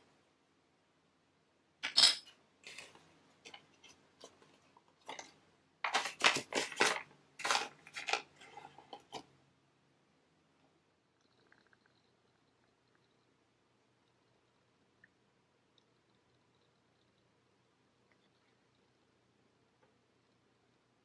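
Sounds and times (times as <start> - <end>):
plastic toy pieces clattering: 5.0 - 9.2.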